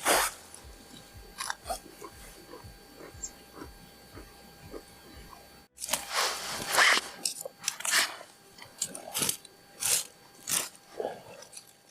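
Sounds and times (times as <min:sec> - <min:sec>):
person chewing crunchy food: 0:00.2 - 0:06.0.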